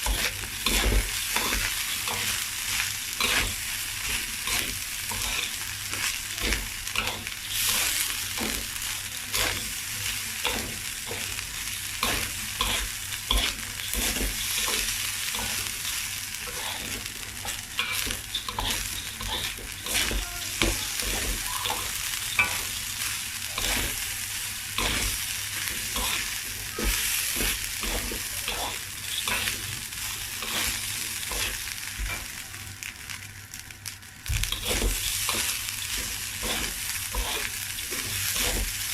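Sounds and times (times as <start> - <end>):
rice sizzling in a pan: 0.0 - 38.9
utensil scraping a pan: 12.0 - 22.8, 24.8 - 29.7, 30.4 - 32.2, 34.5 - 38.7.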